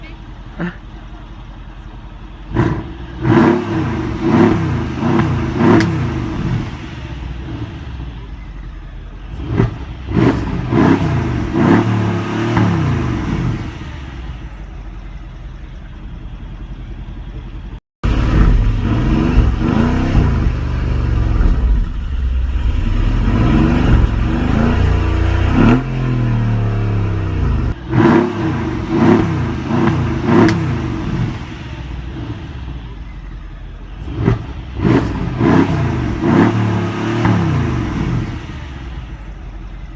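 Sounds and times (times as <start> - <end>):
car engine revving: 1.3 - 39.9
exhaust pops and crackles: 4.4 - 6.4, 18.0 - 25.9, 29.0 - 31.4.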